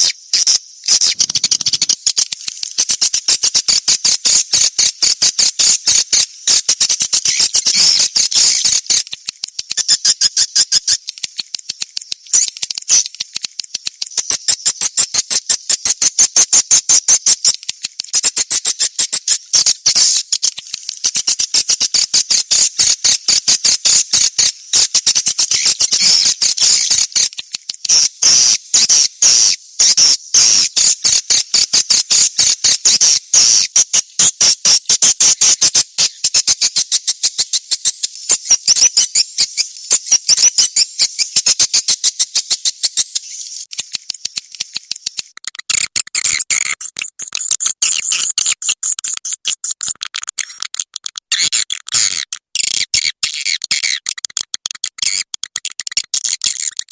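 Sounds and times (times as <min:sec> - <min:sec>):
swiftlets chirping: 0:00.9 - 0:01.9.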